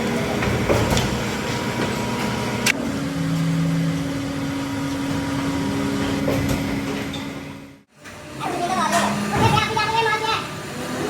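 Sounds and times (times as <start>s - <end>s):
factory machinery humming: 0.0s - 11.0s.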